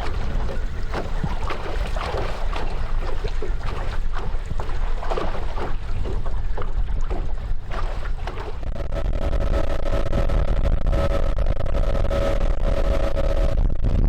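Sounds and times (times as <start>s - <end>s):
rushing water: 0.0s - 8.8s
wind on microphone: 0.0s - 8.9s
outboard motor running: 0.0s - 13.6s.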